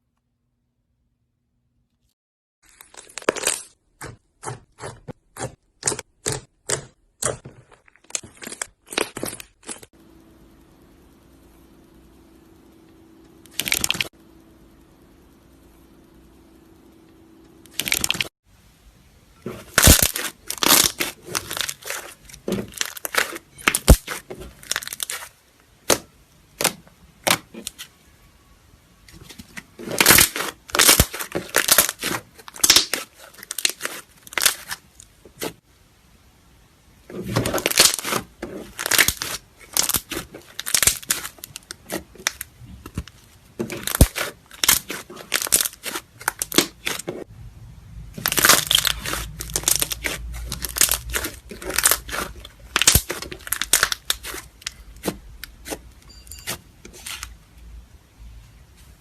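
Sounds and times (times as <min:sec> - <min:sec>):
slime crackling and popping: 0:02.6 - 0:03.8, 0:19.7 - 0:25.3, 0:29.8 - 0:35.1, 0:37.3 - 0:47.1, 0:48.2 - 0:55.8.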